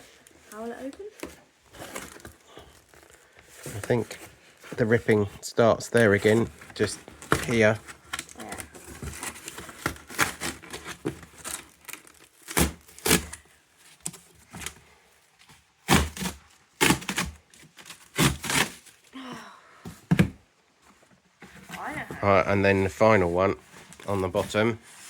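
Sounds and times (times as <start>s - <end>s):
cardboard box ripping: 6.2s - 13.4s, 15.8s - 19.0s.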